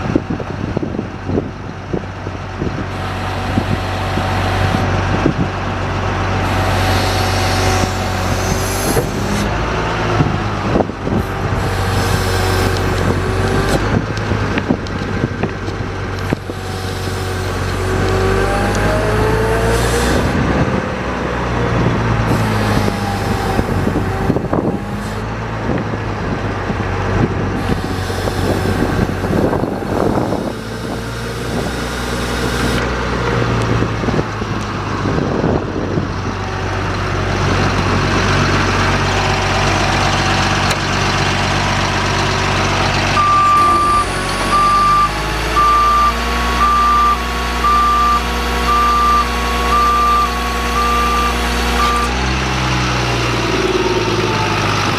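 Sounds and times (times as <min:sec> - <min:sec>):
truck engine running: 0:00.0 - 0:54.9
reversing alarm beeping: 0:02.9 - 0:05.0, 0:06.4 - 0:09.4, 0:16.3 - 0:20.3, 0:22.3 - 0:25.2, 0:27.6 - 0:32.8, 0:43.1 - 0:52.3.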